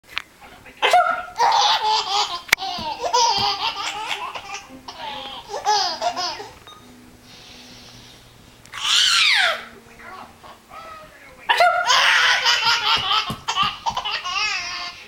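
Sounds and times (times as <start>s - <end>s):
baby laughing: 0.8s - 6.6s, 8.7s - 15.0s.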